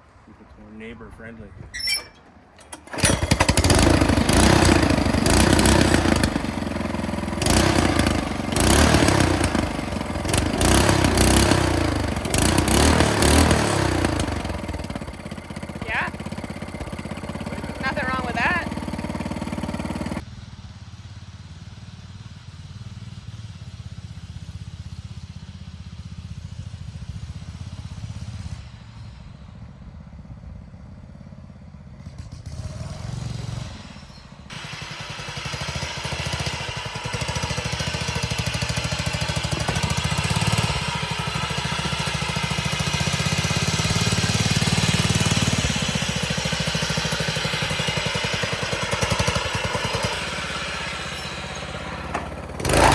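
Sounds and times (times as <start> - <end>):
riding lawn mower engine: 0.0 - 52.9.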